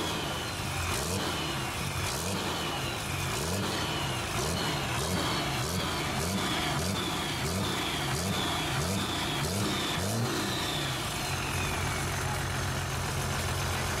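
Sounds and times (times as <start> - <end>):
high whine: 0.0 - 12.8
diesel engine revving then idling: 0.0 - 14.0.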